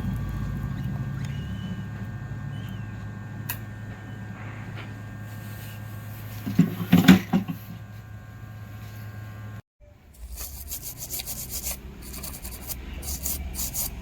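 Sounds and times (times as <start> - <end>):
steady electrical hum: 0.0 - 14.0
small tools clicking and scraping: 10.2 - 14.0.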